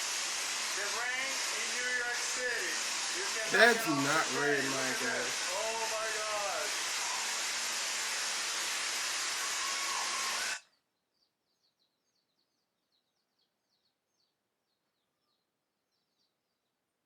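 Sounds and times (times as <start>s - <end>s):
torrential rain hissing: 3.5s - 10.5s.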